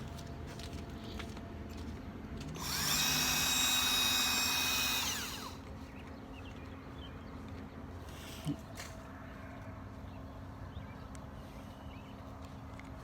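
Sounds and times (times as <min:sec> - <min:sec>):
battery drill whining: 0:02.6 - 0:05.6.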